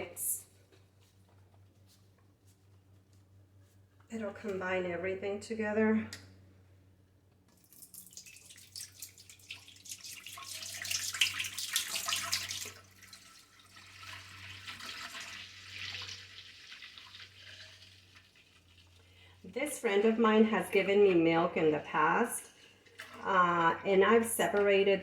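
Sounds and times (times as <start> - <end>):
milk splashing into a pot: 7.5 - 19.4.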